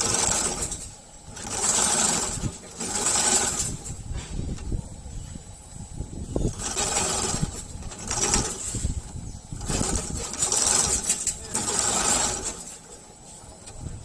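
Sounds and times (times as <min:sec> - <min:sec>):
industrial sewing machine stitching: 0:00.0 - 0:04.0, 0:06.4 - 0:12.9.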